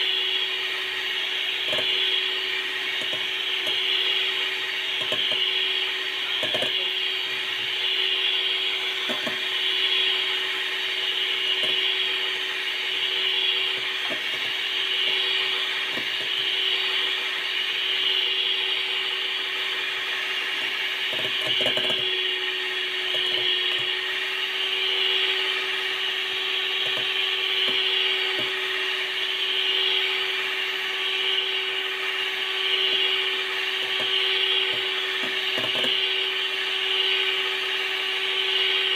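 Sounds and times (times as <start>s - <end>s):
electric hand mixer whirring: 0.0s - 38.9s.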